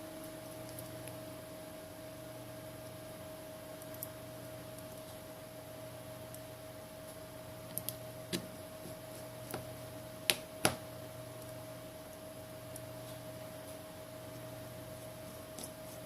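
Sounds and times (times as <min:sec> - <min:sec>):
faint electrical hum: 0:00.0 - 0:16.0.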